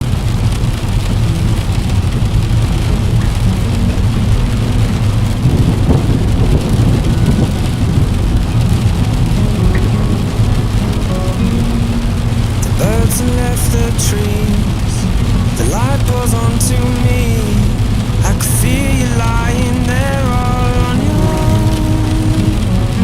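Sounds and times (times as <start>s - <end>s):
heavy rain against window: 0.0s - 23.0s
thunder rumble: 0.0s - 23.0s.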